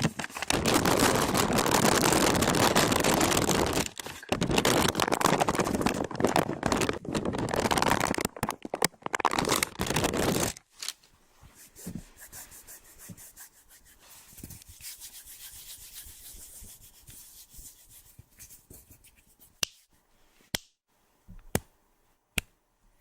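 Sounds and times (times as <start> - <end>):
rubbing and scratching on microphone: 0.0 - 10.7, 11.3 - 20.4.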